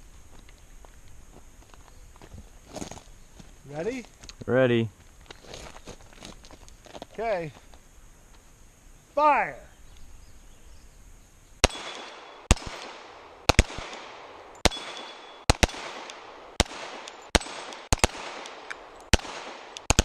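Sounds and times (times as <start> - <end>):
pistol shots: 11.6 - 20.0.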